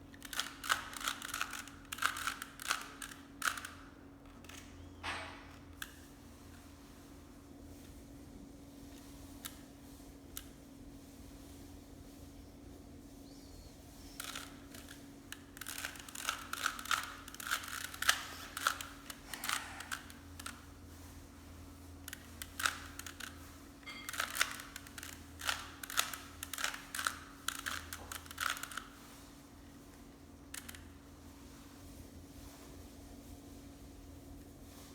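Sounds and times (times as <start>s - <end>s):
plastic puzzle cube clicking: 0.2s - 3.8s, 14.2s - 20.6s, 22.1s - 23.3s, 24.1s - 28.9s.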